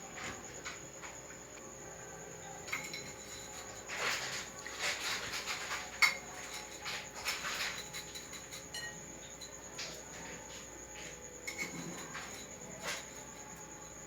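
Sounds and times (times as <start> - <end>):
utensils and dishes clicking: 2.6 - 10.0, 11.4 - 13.5.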